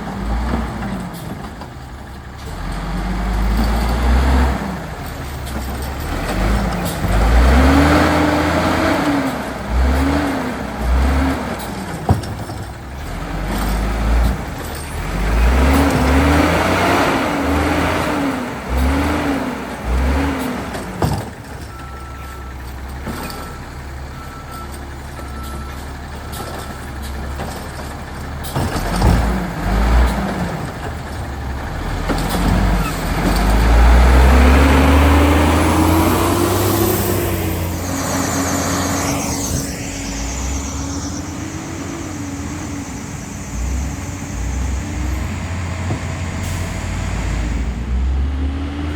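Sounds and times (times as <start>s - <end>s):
garbage truck engine revving: 2.2s - 22.0s, 26.1s - 48.9s
short beeps: 34.1s - 46.7s.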